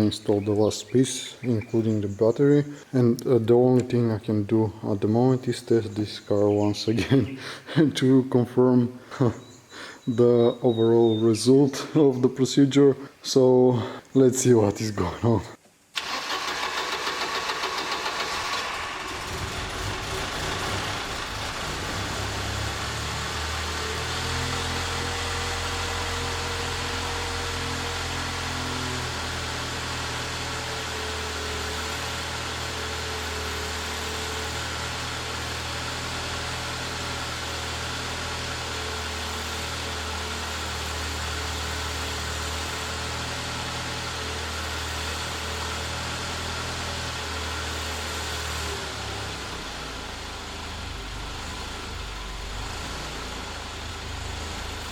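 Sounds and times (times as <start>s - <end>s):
car engine idling: 16.0s - 54.9s.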